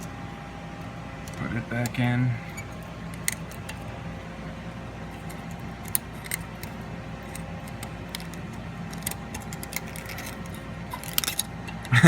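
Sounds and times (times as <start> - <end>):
steady low hum: 0.0 - 12.0
metallic clicks and scrapes: 1.2 - 4.0, 5.1 - 11.9.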